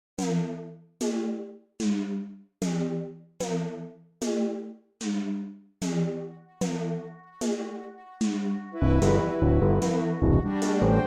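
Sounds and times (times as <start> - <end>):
struck chords: 8.8 - 11.0.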